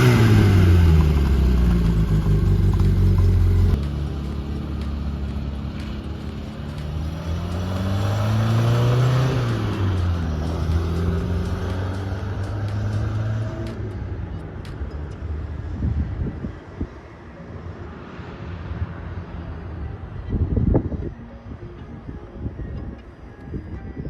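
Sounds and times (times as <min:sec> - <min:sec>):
car engine running: 0:00.0 - 0:13.8
road and outdoor noise: 0:00.0 - 0:24.0.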